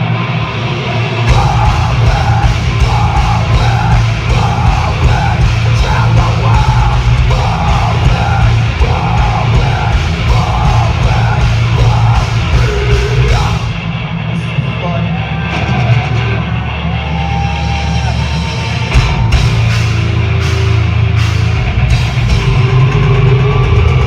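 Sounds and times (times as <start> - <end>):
vocals: 0.0 - 17.0, 21.9 - 24.0
bass: 0.0 - 24.0
distorted guitars: 0.0 - 24.0
pounding drums: 0.5 - 24.0.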